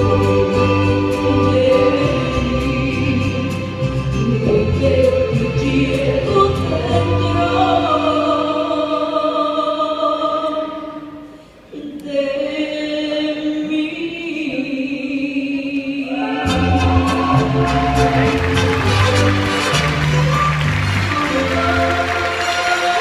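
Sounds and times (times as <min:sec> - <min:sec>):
band with bass and percussion: 0:16.5 - 0:23.0.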